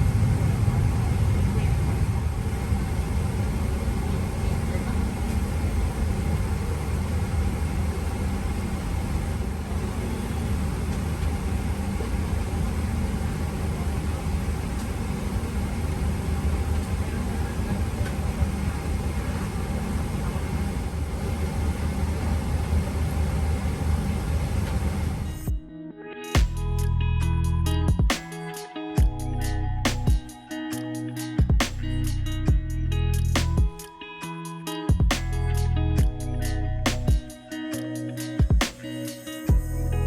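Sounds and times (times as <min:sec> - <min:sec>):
airliner cabin engine and airflow noise: 0:00.0 - 0:25.7.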